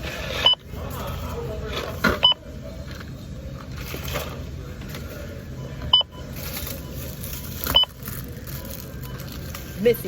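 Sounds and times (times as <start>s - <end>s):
store background noise: 0.0s - 10.0s
barcode scanner beeping: 5.6s - 9.9s.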